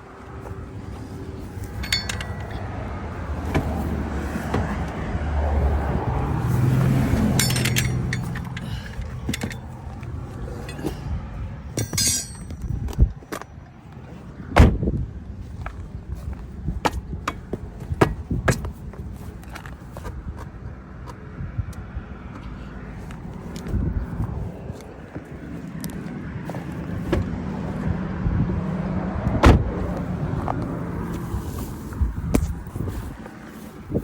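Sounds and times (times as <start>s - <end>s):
car engine humming: 0.0s - 34.0s.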